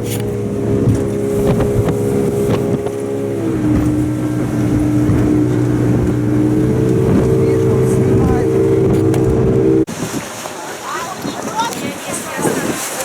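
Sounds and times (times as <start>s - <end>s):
short knocks: 0.0s - 9.8s
motorboat engine running: 0.0s - 13.0s.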